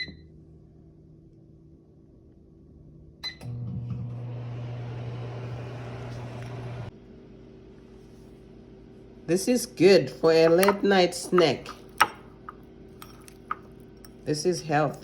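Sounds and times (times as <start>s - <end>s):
microwave keypad beep: 0.0s - 0.2s
microwave humming with fan: 0.0s - 14.5s.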